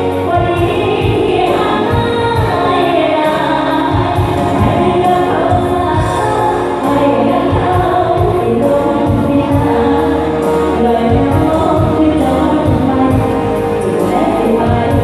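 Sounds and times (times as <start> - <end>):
live band music: 0.0 - 15.0
person singing: 0.0 - 15.0
steady drum beat: 0.4 - 10.4.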